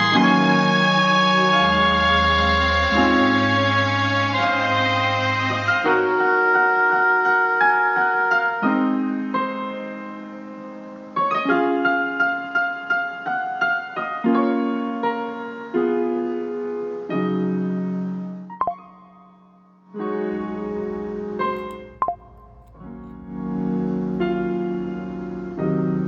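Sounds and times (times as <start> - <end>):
slow jazz-hop keyboard chords: 20.3 - 25.6.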